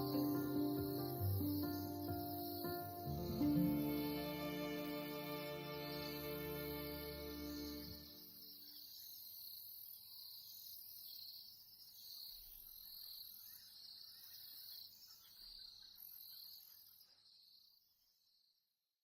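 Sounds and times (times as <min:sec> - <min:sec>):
insect chorus shrilling: 0:00.0 - 0:09.2.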